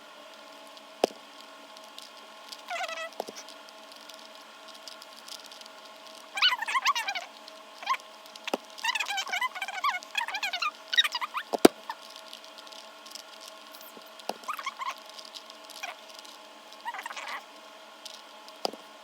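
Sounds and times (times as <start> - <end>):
high wavering squeaks: 6.3 - 12.0, 13.7 - 15.0, 16.8 - 17.5.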